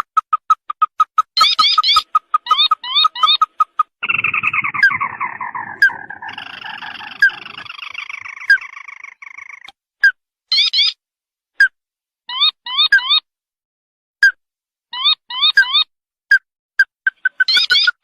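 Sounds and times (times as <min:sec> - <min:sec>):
descending rattling bird trill: 0:01.3 - 0:09.7
bird short rising notes: 0:01.6 - 0:09.7.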